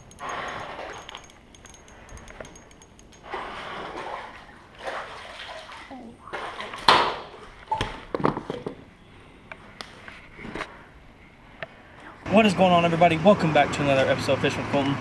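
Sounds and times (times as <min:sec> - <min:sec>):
water splashing and sloshing: 0:00.0 - 0:08.8
person's voice: 0:12.3 - 0:15.0.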